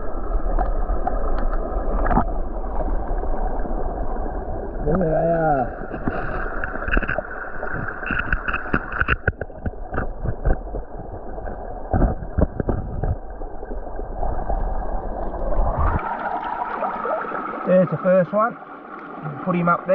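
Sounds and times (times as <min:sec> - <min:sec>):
creek water running: 0:00.0 - 0:19.9.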